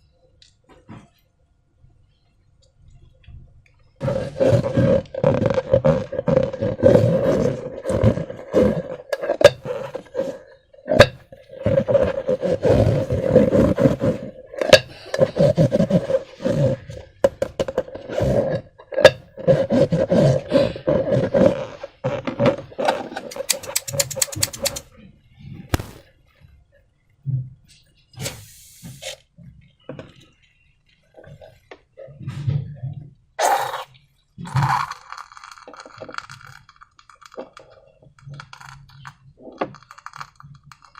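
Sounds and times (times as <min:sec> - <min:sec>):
rubbery rubbing of balloons: 0:04.0 - 0:24.8, 0:25.7 - 0:26.0
sharp clicks: 0:23.3 - 0:24.8.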